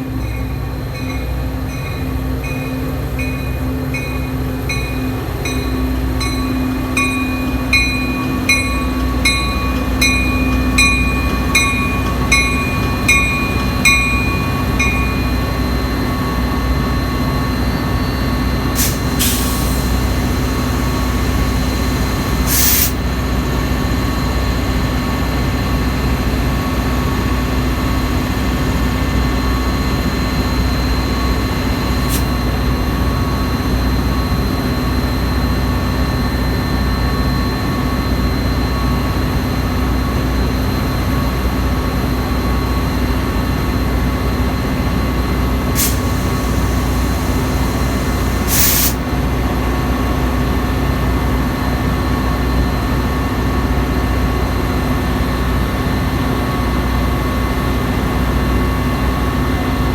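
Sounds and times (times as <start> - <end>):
diesel locomotive rumble: 0.0 - 59.9
short hissing bursts: 18.8 - 23.0, 45.8 - 49.0.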